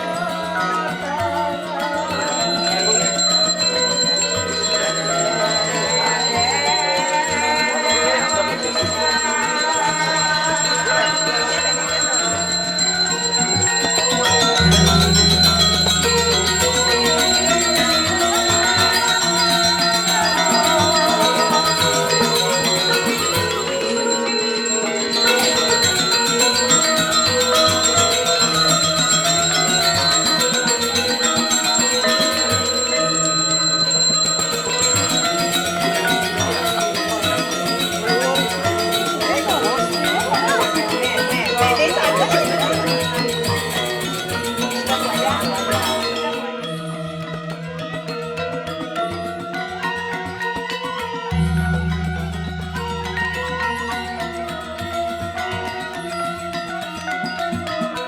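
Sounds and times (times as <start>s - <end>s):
high bell ringing: 0.0s - 57.6s
ceremonial music with metal tones: 2.2s - 58.0s
deep tone: 12.5s - 20.2s.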